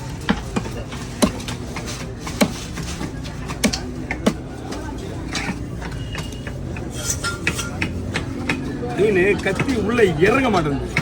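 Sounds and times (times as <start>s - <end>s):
knife chopping fish on a block: 0.3s - 4.4s.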